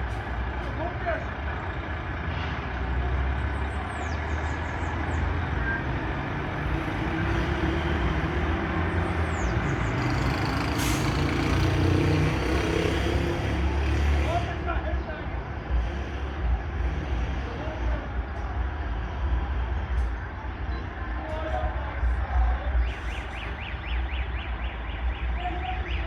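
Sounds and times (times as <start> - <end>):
truck engine rumbling: 0.0 - 26.0.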